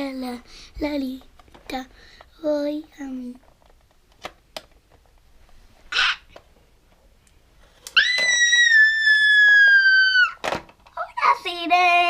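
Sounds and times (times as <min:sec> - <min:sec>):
girl screaming: 0:08.0 - 0:10.4.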